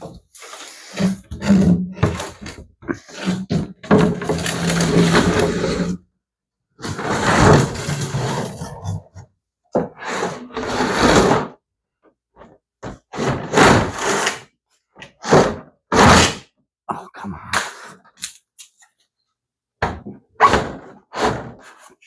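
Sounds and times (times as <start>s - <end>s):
plastic parts scraping and grinding: 0.0s - 6.0s, 6.8s - 11.6s.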